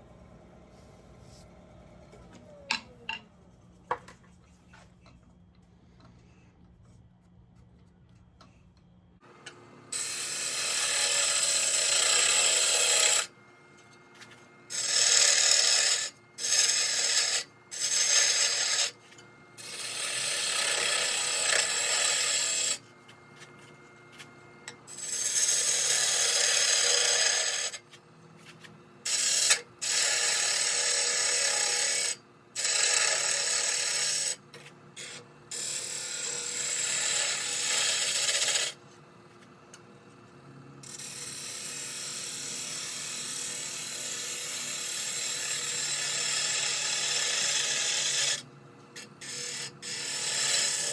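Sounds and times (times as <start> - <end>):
lathe faint hum: 0.0 - 29.2
lathe tool hissing cuts: 9.9 - 13.3, 14.7 - 19.0, 19.6 - 22.8, 24.9 - 27.8, 35.0 - 38.8, 40.9 - 48.4, 49.2 - 50.9.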